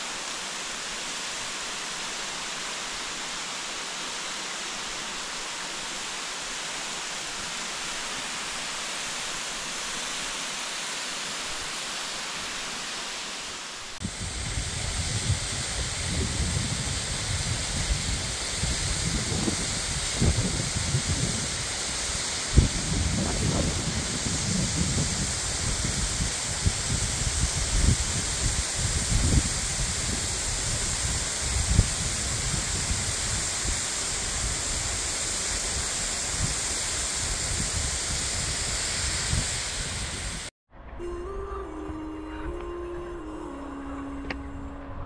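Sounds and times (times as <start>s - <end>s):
falling water rushing: 0.0s - 40.5s
wind buffeting microphone: 14.0s - 40.5s.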